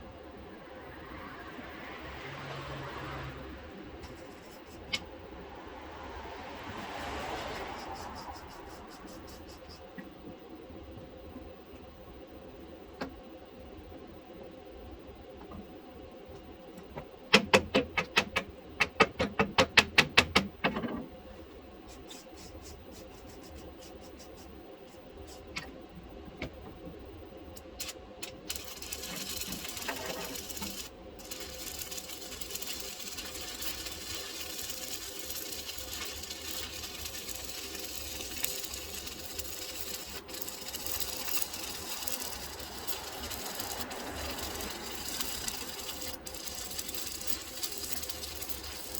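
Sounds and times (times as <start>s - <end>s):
welding crackling hiss: 27.6s - 48.9s.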